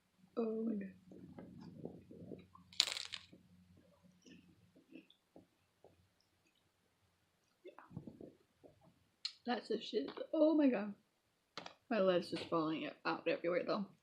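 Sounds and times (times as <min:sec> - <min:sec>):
crispy taco crunching: 0:02.7 - 0:03.4.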